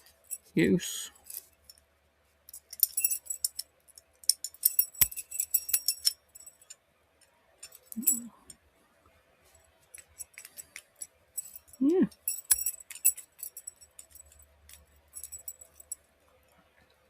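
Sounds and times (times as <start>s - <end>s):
keys jingling: 2.5s - 6.8s, 7.6s - 8.5s, 9.9s - 16.0s.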